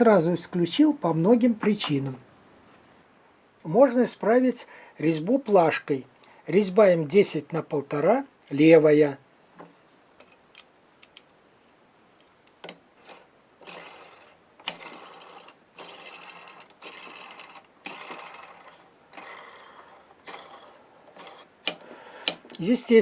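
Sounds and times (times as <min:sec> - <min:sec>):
metal scraping on metal: 0:13.0 - 0:21.5.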